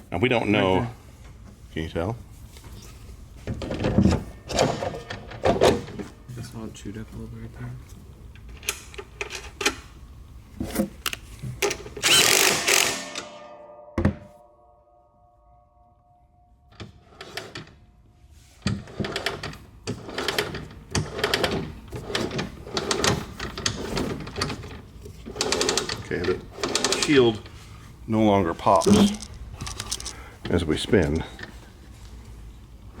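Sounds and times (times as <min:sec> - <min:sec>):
loud ringing metal clang: 0:12.4 - 0:16.6
clicking and rattling: 0:28.7 - 0:30.2
tools clicking and knocking: 0:28.7 - 0:30.2.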